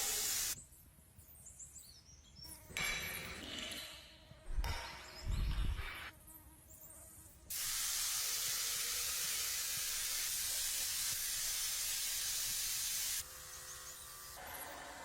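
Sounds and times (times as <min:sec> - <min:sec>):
steady spraying hiss: 0:00.0 - 0:00.6, 0:07.5 - 0:13.3.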